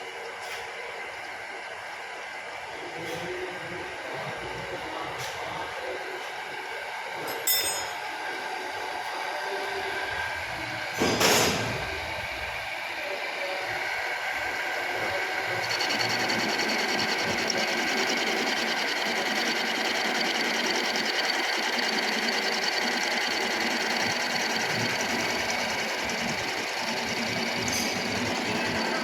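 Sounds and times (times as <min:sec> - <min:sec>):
milling machine running: 0:11.9 - 0:29.0.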